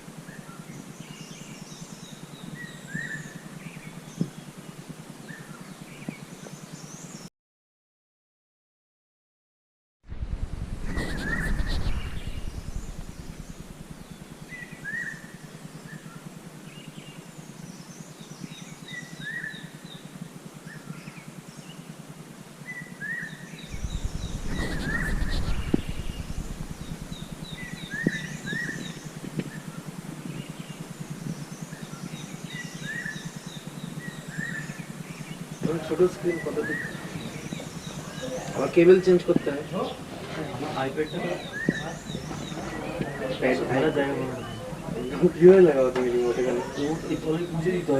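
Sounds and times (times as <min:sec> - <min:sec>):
birds chirping: 0:00.0 - 0:07.3, 0:10.8 - 0:47.9
low rumble: 0:10.1 - 0:14.6, 0:23.7 - 0:29.4.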